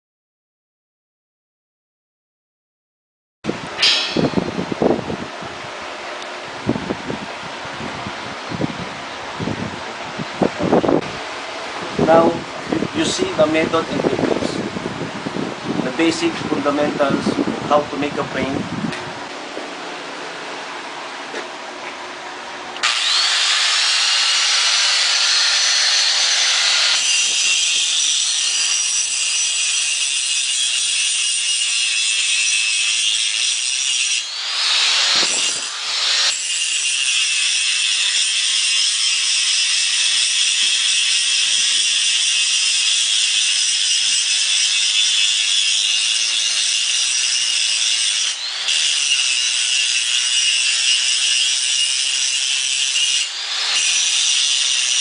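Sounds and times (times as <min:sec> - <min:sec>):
angle grinder grinding steel: 0:03.8 - 0:04.9, 0:22.8 - 0:55.0.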